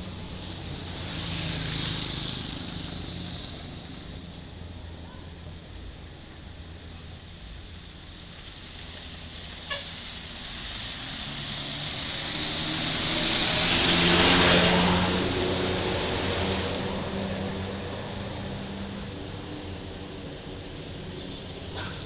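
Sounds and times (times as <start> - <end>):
motor vehicle driving past: 10.1 - 19.1.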